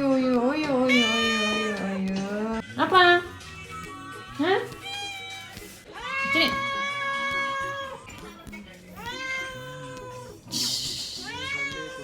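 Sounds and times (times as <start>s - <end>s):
cat meowing: 0.9s - 2.0s, 3.9s - 8.1s, 9.0s - 10.4s, 11.2s - 12.0s.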